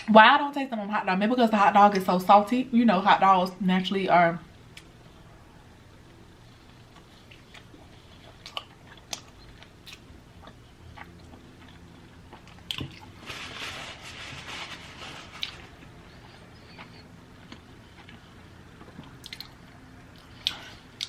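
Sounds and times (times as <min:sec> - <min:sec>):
close-miked chewing: 0:06.6 - 0:13.2, 0:15.3 - 0:21.0
wet mouth clicks and smacks: 0:19.0 - 0:19.6.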